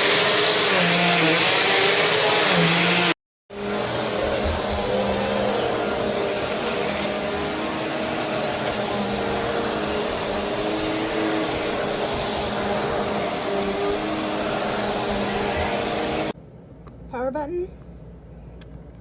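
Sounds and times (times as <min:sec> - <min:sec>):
vacuum cleaner running: 0:00.0 - 0:16.4.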